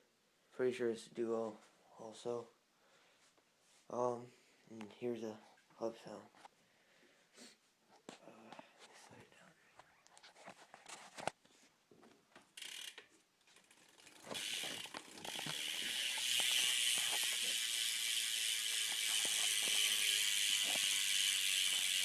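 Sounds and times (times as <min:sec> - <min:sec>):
bicycle hub freewheel clicking: 0:12.6 - 0:22.0.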